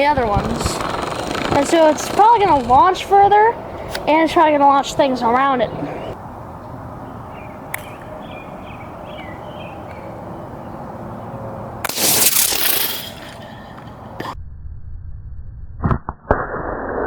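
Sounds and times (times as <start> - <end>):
sharp click: 7.7 - 8.1
aerosol can bursting with hiss: 11.9 - 13.5.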